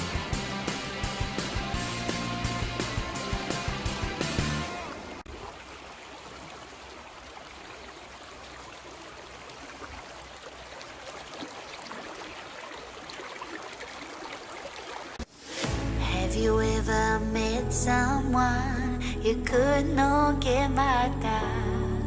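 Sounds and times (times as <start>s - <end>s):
background music: 0.0s - 5.2s, 15.3s - 22.0s
creek water flowing: 0.0s - 16.3s.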